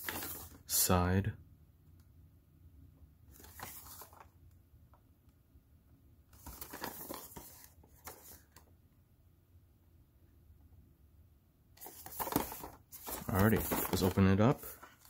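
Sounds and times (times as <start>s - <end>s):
packaging rustling and scraping: 6.4s - 8.5s, 11.8s - 15.0s.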